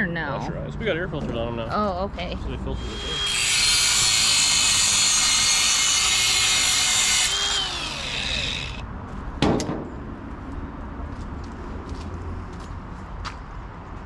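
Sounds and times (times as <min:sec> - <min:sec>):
rotary power tool grinding metal: 0:02.8 - 0:08.8.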